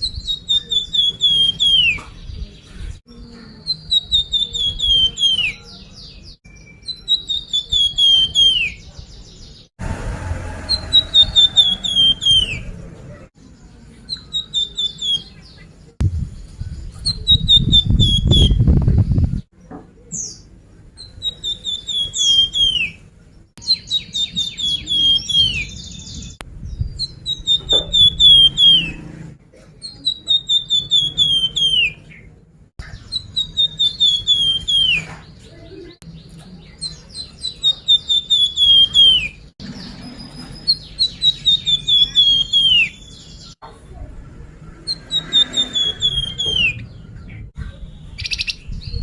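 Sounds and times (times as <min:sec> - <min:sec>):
songbird chirping: 0:00.0 - 0:09.7, 0:10.7 - 0:49.0
low rumble: 0:09.8 - 0:11.8, 0:16.0 - 0:19.4.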